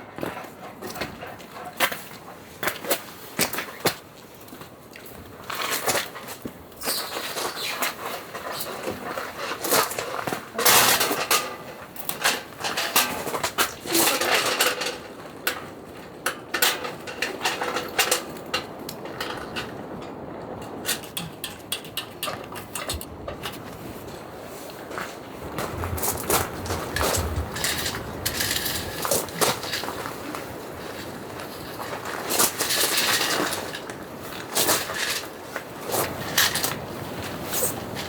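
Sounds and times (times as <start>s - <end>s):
clicks and knocks of handling: 7.1s - 23.7s.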